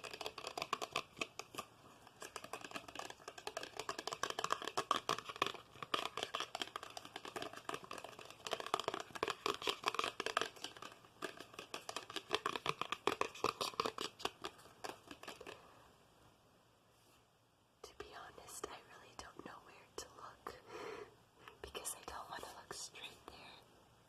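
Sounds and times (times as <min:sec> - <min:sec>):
light tapping and scratching clicks: 0:00.0 - 0:15.6.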